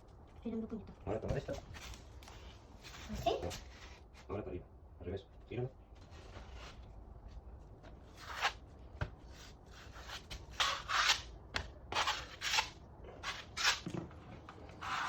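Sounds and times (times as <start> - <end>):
hand tool scraping drywall: 9.3 - 11.3, 11.9 - 13.9, 14.7 - 15.0.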